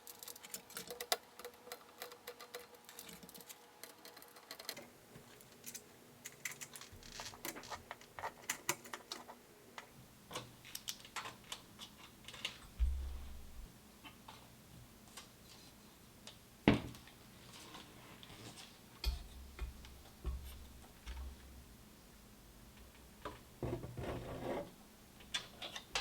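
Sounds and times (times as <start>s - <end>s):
low thump: 12.8s - 13.6s.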